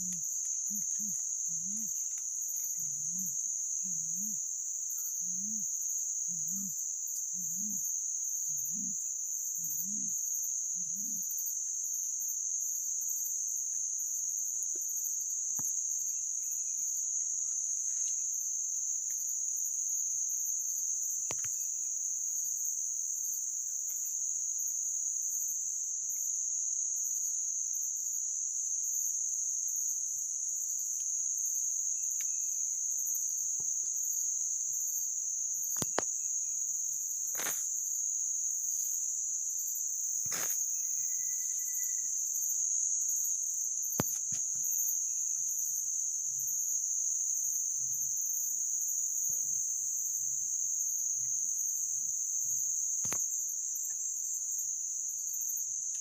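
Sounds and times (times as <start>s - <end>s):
insects droning: 0.0s - 56.0s
faint chirps: 40.3s - 42.2s.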